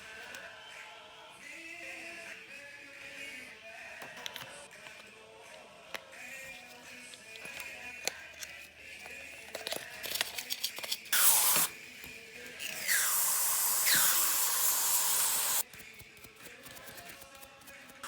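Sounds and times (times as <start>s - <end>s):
spray hissing: 11.2s - 11.7s, 12.9s - 15.6s.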